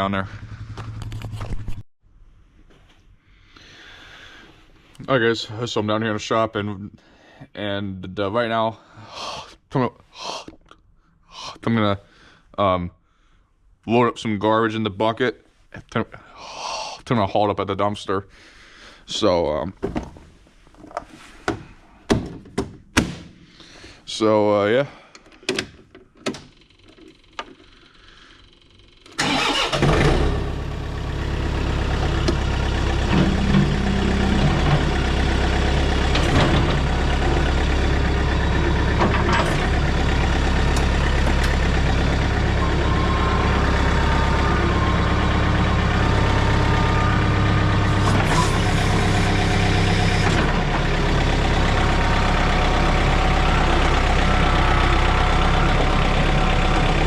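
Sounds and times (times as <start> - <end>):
diesel engine starting and idling: 0.0 - 1.4, 27.8 - 57.0.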